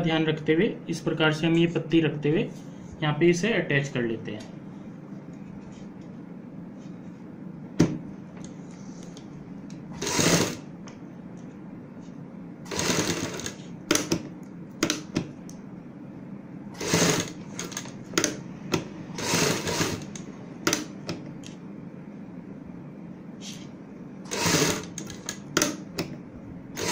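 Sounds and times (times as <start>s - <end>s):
steady low hum: 0.0s - 26.9s
sewing machine stitching: 10.0s - 10.6s, 12.7s - 14.2s, 16.8s - 18.4s, 19.1s - 20.9s, 24.3s - 25.8s.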